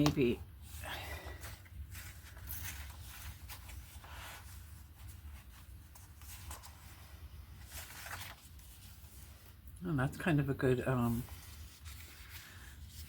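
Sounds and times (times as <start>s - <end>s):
paper rustling and sliding: 1.0s - 9.6s, 11.0s - 13.0s.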